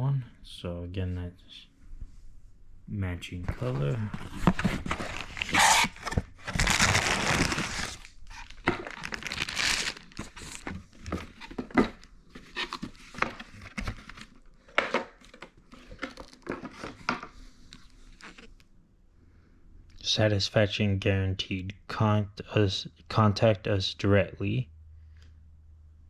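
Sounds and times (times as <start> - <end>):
packaging crinkling and rustling: 3.6 - 18.6.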